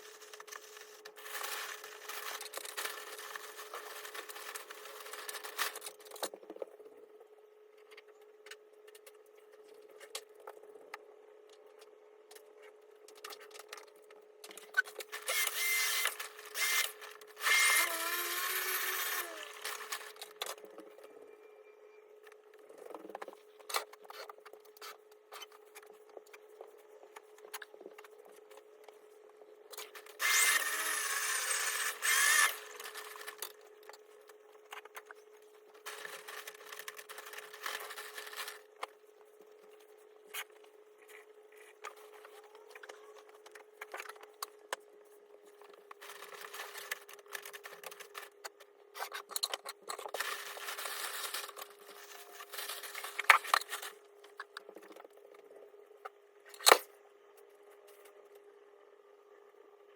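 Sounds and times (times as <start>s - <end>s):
faint steady hum: 0.0s - 59.9s
power tool running: 15.2s - 20.2s, 30.2s - 33.4s
clicks and knocks of parts handled: 45.6s - 55.1s.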